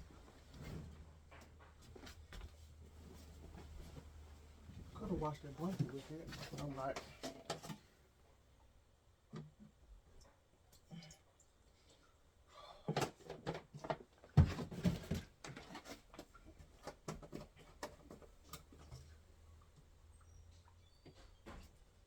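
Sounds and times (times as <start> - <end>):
household knocks and clatters: 12.9 - 19.1.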